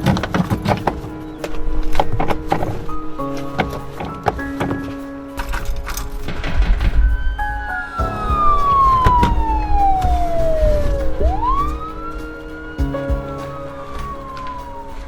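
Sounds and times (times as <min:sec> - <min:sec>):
background music: 0:00.0 - 0:15.0
siren wail: 0:07.2 - 0:15.0.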